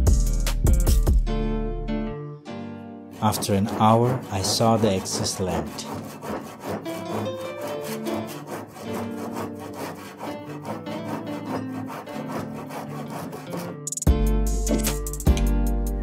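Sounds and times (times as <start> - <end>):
hand saw cutting wood: 3.2 - 15.5.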